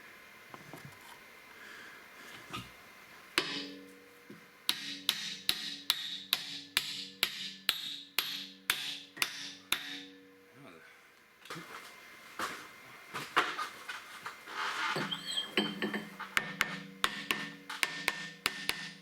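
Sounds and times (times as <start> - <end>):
hammer striking steel: 3.4 - 4.0, 4.7 - 10.5, 15.6 - 19.0.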